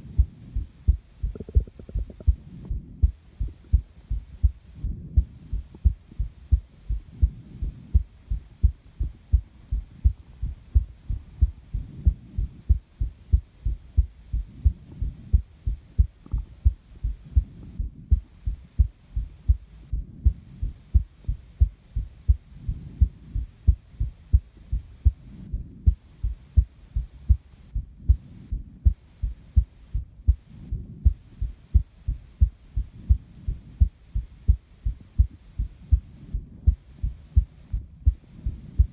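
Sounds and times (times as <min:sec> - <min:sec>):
heartbeat thumps: 0:00.0 - 0:38.9
breathing: 0:07.1 - 0:08.2, 0:22.5 - 0:23.6, 0:32.9 - 0:34.2, 0:35.5 - 0:38.9.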